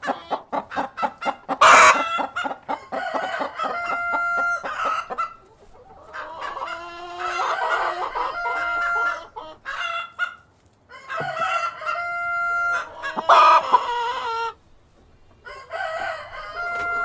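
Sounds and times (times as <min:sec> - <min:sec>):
drawn-out hen calls: 0:00.0 - 0:17.0
hens clucking: 0:00.0 - 0:17.0
rooster crowing: 0:01.6 - 0:05.3, 0:06.3 - 0:10.0, 0:10.9 - 0:14.6, 0:15.4 - 0:17.0.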